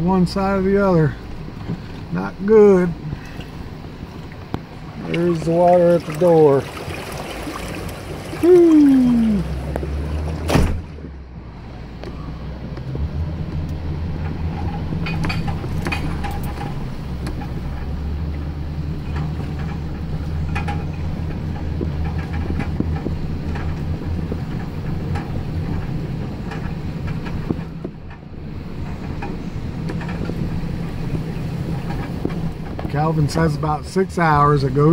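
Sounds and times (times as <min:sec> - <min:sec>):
truck engine running: 0:00.0 - 0:34.9
water splashes: 0:02.9 - 0:11.1.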